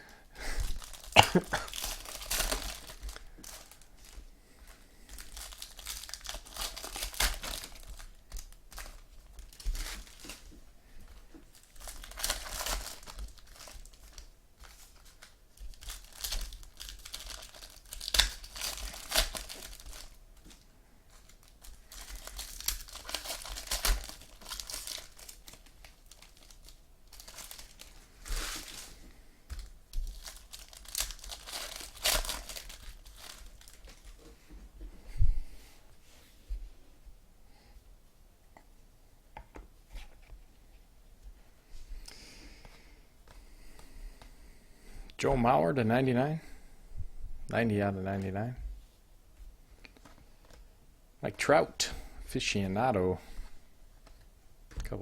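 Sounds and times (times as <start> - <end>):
plastic wrappers crinkling and tearing: 0.6 - 34.4, 49.8 - 50.7.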